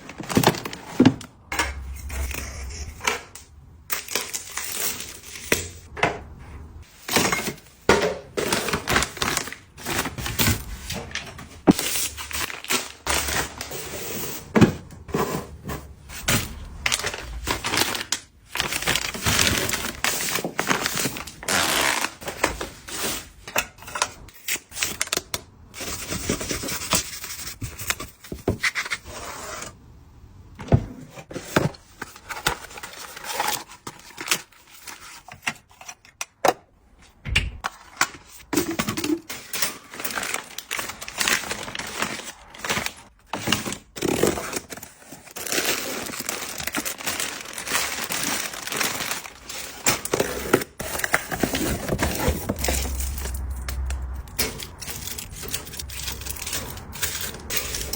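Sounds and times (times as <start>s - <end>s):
packaging tearing and crinkling: 16.3s - 22.7s, 39.4s - 57.9s.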